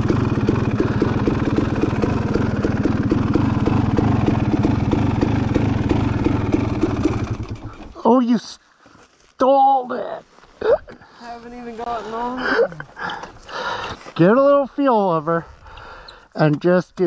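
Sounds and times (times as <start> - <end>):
dirt bike engine idling: 0.0 - 8.0.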